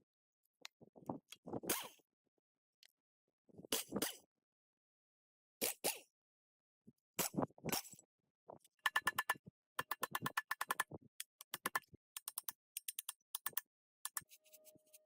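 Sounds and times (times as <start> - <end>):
quick metallic clicks and taps: 8.8 - 14.3.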